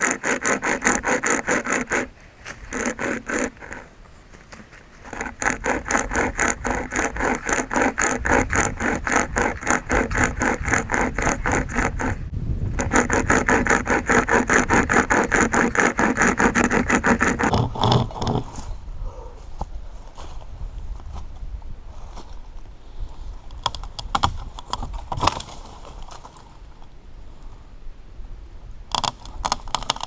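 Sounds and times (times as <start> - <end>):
chain saw rasping through wood: 0.0 - 17.5.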